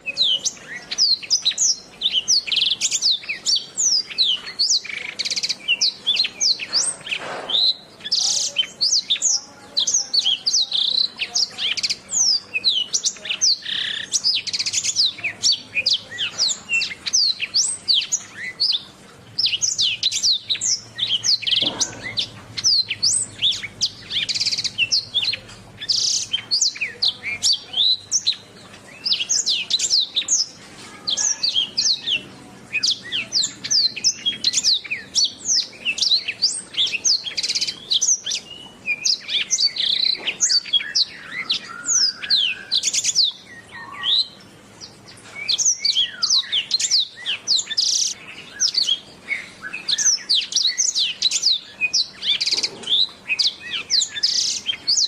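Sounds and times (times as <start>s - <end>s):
canary singing: 0.0s - 55.0s.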